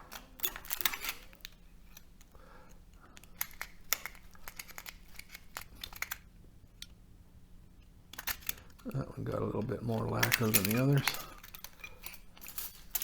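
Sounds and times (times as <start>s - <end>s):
light metallic clinks: 8.1s - 13.0s.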